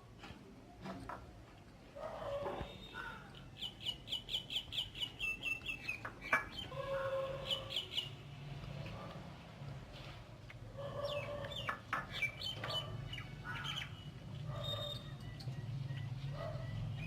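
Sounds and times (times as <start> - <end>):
bird chirping: 2.6 - 8.2, 11.0 - 17.0.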